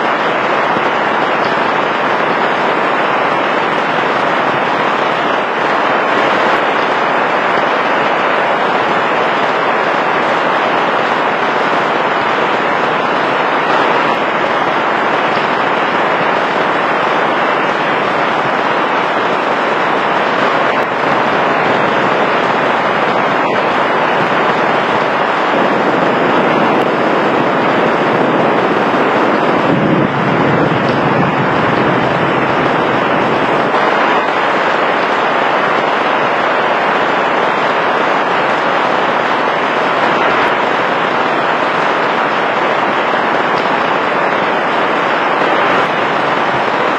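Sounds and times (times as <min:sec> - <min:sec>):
heavy rain pouring: 0:00.0 - 0:46.9
low rumble of thunder: 0:26.2 - 0:33.7.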